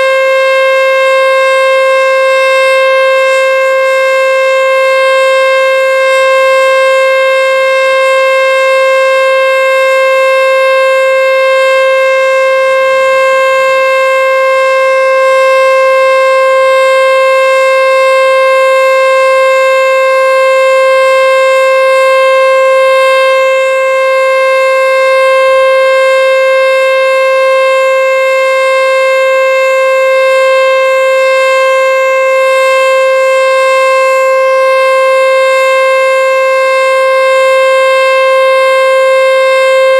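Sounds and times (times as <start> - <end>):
storm siren steady tone: 0.0 - 39.9.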